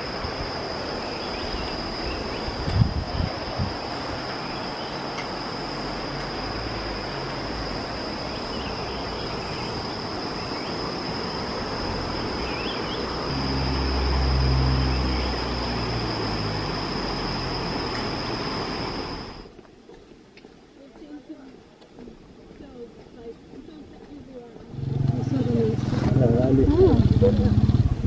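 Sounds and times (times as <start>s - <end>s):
high-pitched insect drone: 0.0s - 19.5s, 24.7s - 27.8s
low hum: 0.0s - 19.6s, 24.3s - 28.0s
dense rushing noise: 6.4s - 19.4s.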